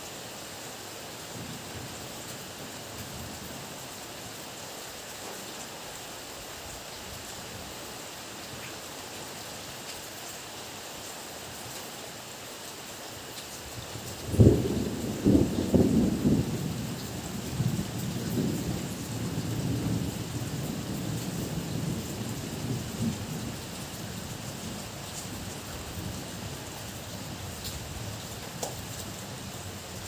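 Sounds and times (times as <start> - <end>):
heavy rain hissing: 0.0 - 30.0
thunder crack and rumble: 14.1 - 26.7.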